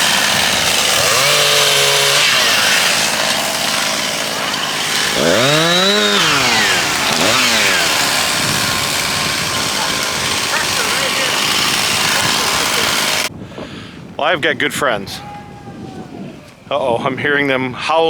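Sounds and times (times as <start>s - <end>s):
chainsaw revving while cutting: 0.0s - 13.3s.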